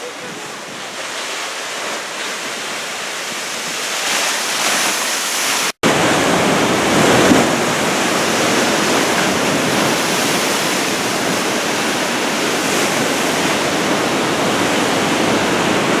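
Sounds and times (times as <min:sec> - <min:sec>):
heavy ocean surf breaking: 0:00.0 - 0:16.0.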